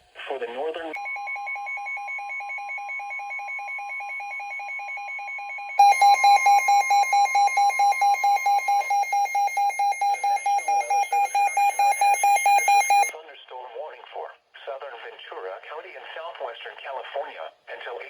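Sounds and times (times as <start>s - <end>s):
steady alarm tone: 1.0s - 13.1s
rapid electronic beeping: 5.8s - 13.1s.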